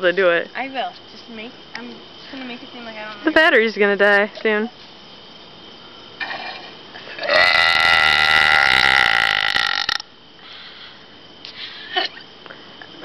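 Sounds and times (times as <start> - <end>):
woman belching loudly: 7.2 - 10.0.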